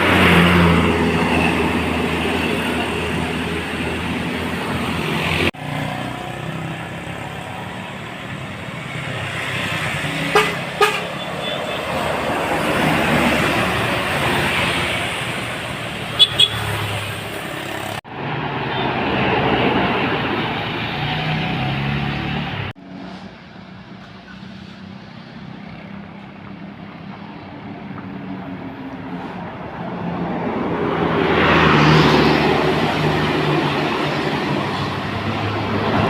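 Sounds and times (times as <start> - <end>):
road traffic with buses passing: 0.0 - 36.0
horn beeps: 16.2 - 16.8.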